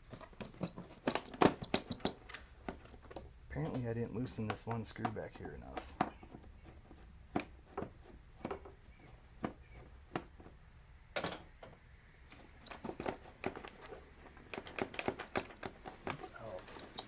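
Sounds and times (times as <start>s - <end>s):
screwdriver on a screw: 12.3s - 17.0s.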